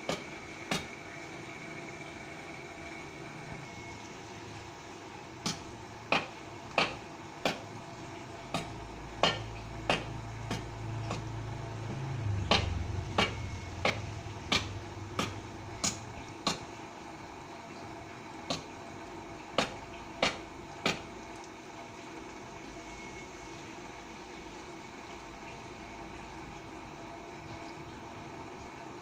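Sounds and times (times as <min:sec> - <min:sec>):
tool chopping wood: 0:05.5 - 0:07.6, 0:08.5 - 0:11.2
low hum: 0:08.6 - 0:16.4.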